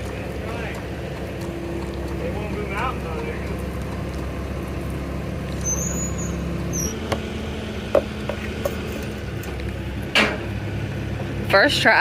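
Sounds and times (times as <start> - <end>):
engine idling: 0.0 - 12.0
high-pitched metal squeaks: 5.5 - 7.1.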